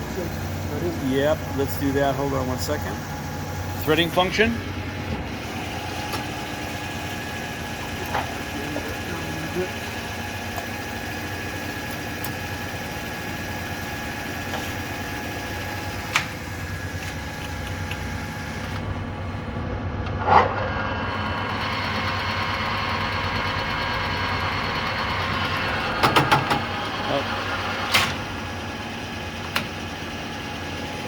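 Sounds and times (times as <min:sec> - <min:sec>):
lathe gearbox hum: 0:00.0 - 0:20.2, 0:21.0 - 0:31.0.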